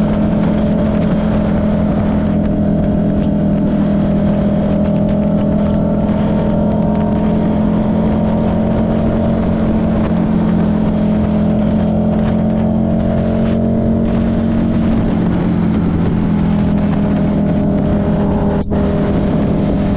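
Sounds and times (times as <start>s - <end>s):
motorcycle engine cruising: 0.0s - 19.9s.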